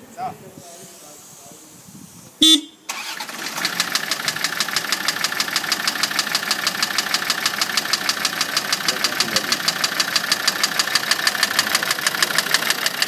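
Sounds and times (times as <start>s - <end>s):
diesel engine starting and idling: 2.4s - 13.0s
fast regular engine knocking: 3.4s - 13.0s.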